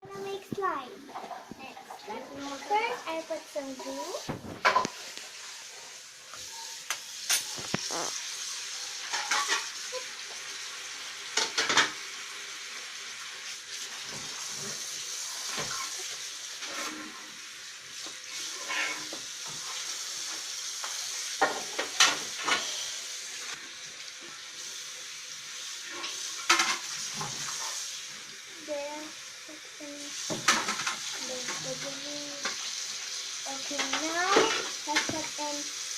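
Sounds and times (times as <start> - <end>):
steady hiss: 12.2 - 35.9.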